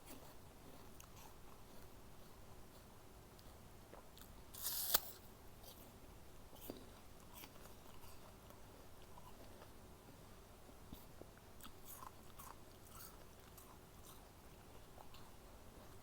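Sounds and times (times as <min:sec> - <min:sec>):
close-up chewing: 0:00.0 - 0:16.0
apple crunching: 0:04.2 - 0:05.2.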